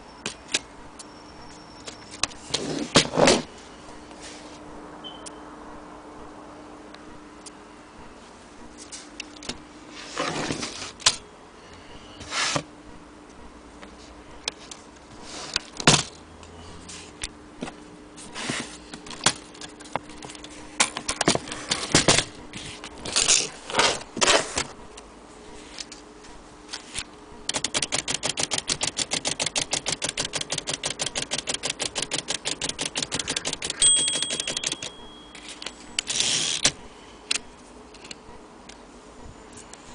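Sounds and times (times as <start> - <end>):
typewriter keys clacking: 27.5 - 35.7
typewriter bell ring: 33.7 - 35.8.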